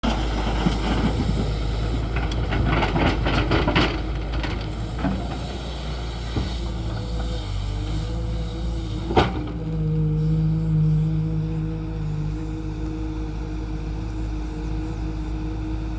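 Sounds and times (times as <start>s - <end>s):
excavator diesel engine running: 0.0s - 15.9s
knocks and rattles: 0.5s - 5.4s.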